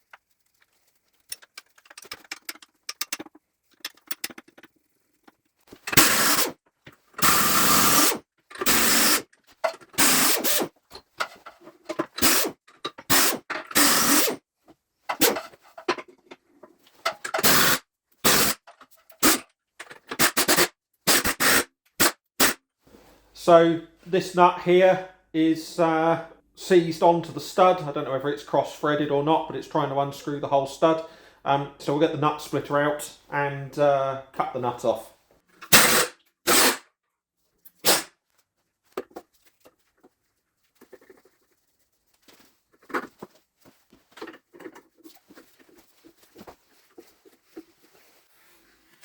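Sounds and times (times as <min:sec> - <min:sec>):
metallic scraping and clicking: 0:00.0 - 0:06.0
short harsh tool noises: 0:05.9 - 0:06.6, 0:07.2 - 0:09.3, 0:09.9 - 0:10.7, 0:12.2 - 0:14.4, 0:20.1 - 0:22.6, 0:35.6 - 0:36.8, 0:37.8 - 0:38.2.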